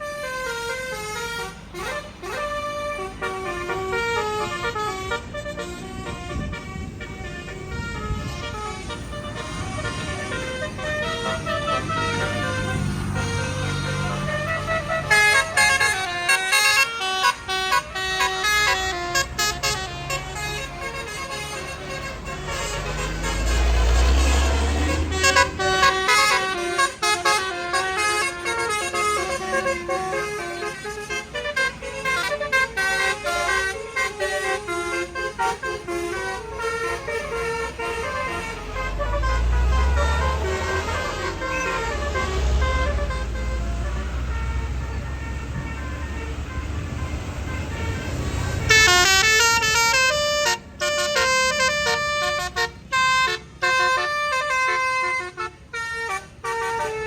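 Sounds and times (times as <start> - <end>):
bus engine rumble: 0.0 - 57.0
high-pitched horn tune: 0.0 - 57.0
musical bus horns playing tunes: 0.0 - 57.0.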